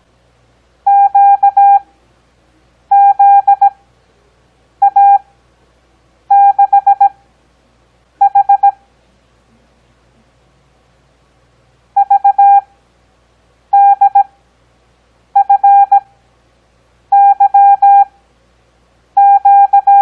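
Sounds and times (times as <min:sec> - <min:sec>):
morse code beeps: 0:00.9 - 0:01.8, 0:02.9 - 0:03.7, 0:04.8 - 0:05.2, 0:06.3 - 0:07.2, 0:08.2 - 0:08.8, 0:12.0 - 0:12.7, 0:13.7 - 0:14.3, 0:15.4 - 0:16.0, 0:17.1 - 0:18.1, 0:19.2 - 0:20.0.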